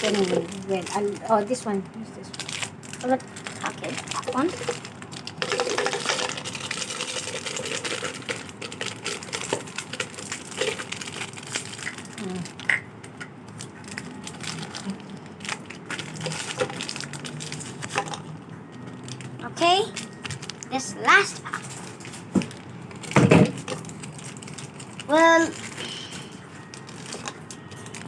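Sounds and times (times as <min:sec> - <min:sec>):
plastic packets crinkling: 0:00.0 - 0:28.0
cookies dropping into container: 0:03.5 - 0:12.8.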